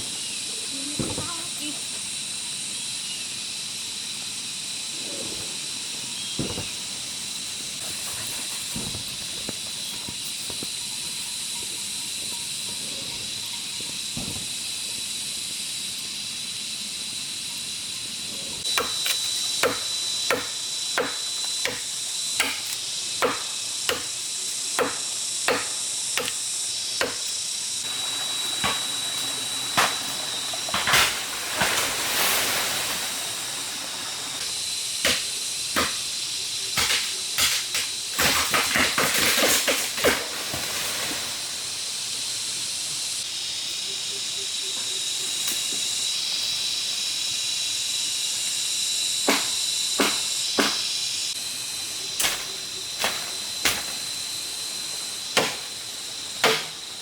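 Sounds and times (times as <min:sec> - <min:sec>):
high-pitched insect buzz: 0:00.0 - 0:39.5, 0:40.1 - 0:57.0
chopping bamboo: 0:18.7 - 0:27.4, 0:35.0 - 0:36.1, 0:36.8 - 0:40.4, 0:49.2 - 0:51.0, 0:55.4 - 0:55.7, 0:56.4 - 0:56.8.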